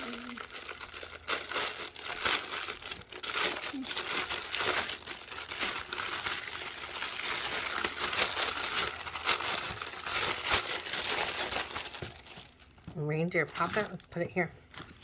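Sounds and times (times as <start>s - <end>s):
plastic packaging crinkling: 0.0s - 15.0s.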